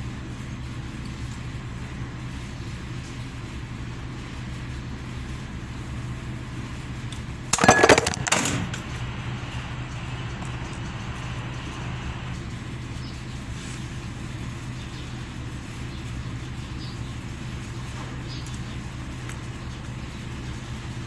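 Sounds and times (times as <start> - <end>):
steady low hum: 7.4 - 12.9
loud clattering burst: 7.5 - 9.0.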